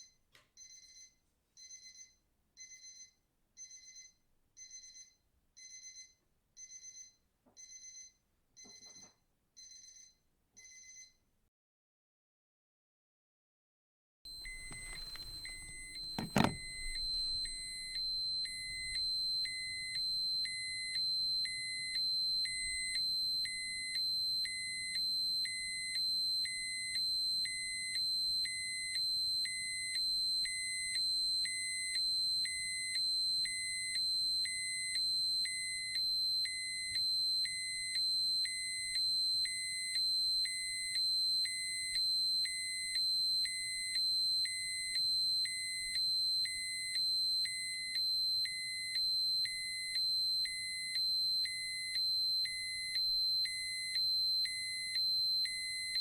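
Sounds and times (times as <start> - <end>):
alarm beeping: 14.3 - 27.9, 43.5 - 56.0.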